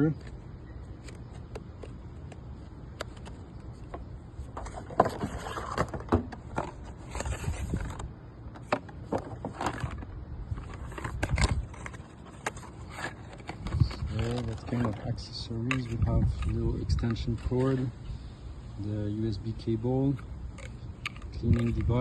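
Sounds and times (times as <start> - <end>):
packaging rustling and clicking: 4.6 - 15.1.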